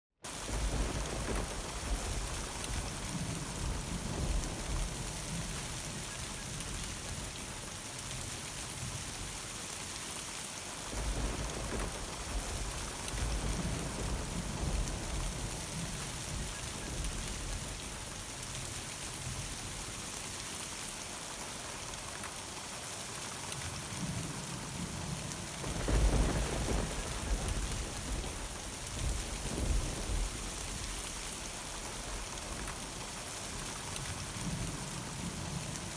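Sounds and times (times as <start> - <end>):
heavy rain hissing: 0.3 - 35.9
rolling thunder: 0.5 - 6.0, 10.9 - 17.7, 25.6 - 32.8.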